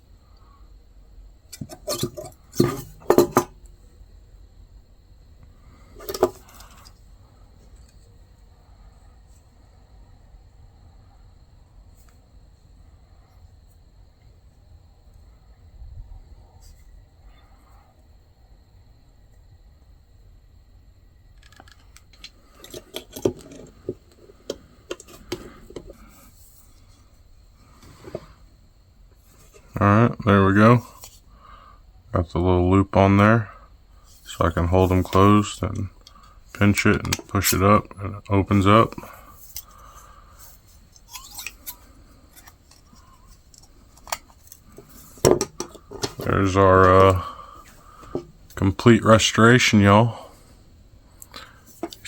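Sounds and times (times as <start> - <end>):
metal wire clinking: 40.4 - 46.3.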